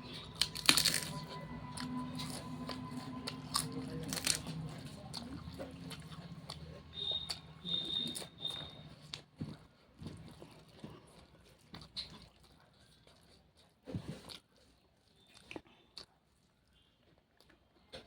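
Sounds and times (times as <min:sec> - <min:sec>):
low steady hum: 0:00.0 - 0:08.3
person chewing food: 0:00.0 - 0:18.0.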